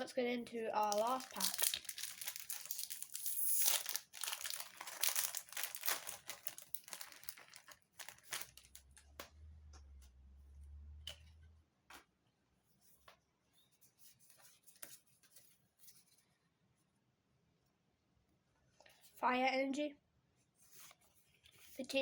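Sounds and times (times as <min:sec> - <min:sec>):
foil wrapper crinkling and tearing: 0:00.8 - 0:09.1.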